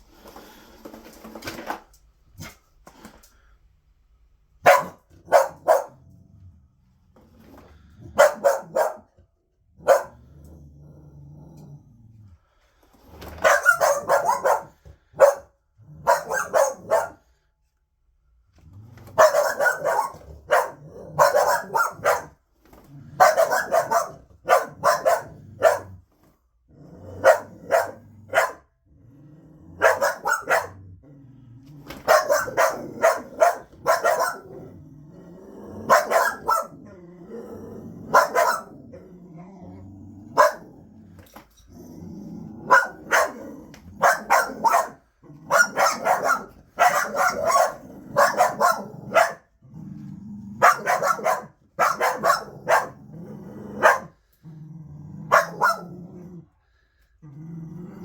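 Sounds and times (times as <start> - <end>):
dogs barking: 4.6 - 6.0, 8.2 - 9.1, 9.8 - 10.2, 13.4 - 17.2, 19.2 - 22.4, 23.2 - 26.0, 27.2 - 28.7, 29.8 - 30.8, 32.0 - 34.7, 35.8 - 36.9, 38.0 - 39.0, 40.3 - 40.7, 42.6 - 49.6, 50.6 - 53.0, 53.8 - 54.2, 55.3 - 56.0
dogs growling: 9.8 - 13.4, 18.6 - 26.0, 26.6 - 58.0.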